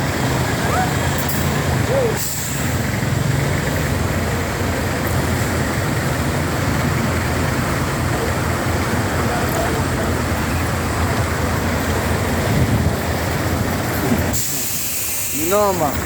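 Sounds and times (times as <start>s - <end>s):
floodwater rushing roar: 0.0s - 16.0s.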